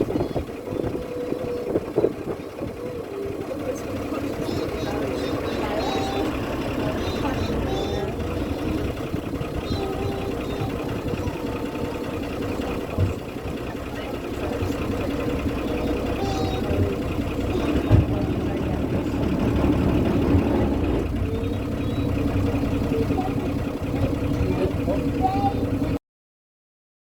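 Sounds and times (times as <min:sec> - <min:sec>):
boat engine humming: 0:00.0 - 0:26.0
faint voices: 0:00.0 - 0:26.0.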